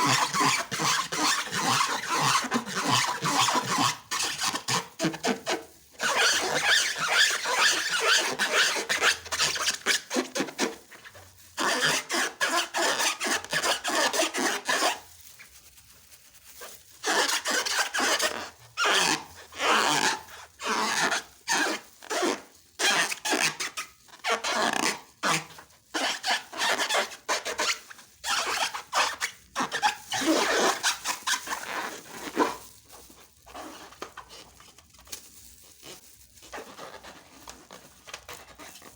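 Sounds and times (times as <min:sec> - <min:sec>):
slime crackly rubbing: 0:00.0 - 0:38.9.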